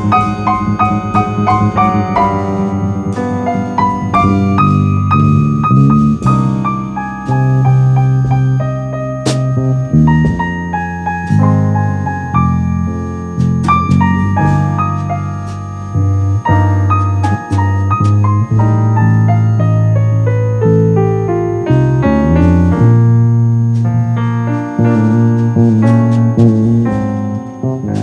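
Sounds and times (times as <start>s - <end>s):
piano music: 0.0s - 28.0s.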